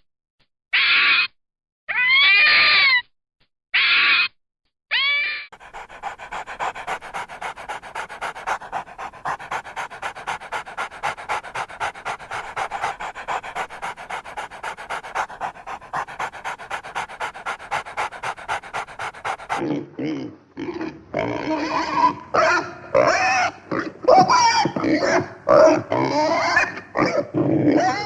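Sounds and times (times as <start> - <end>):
dog panting rapidly: 5.5 - 19.6.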